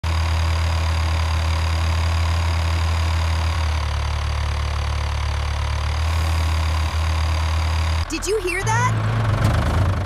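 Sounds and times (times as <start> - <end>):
engine idling: 0.0 - 10.0.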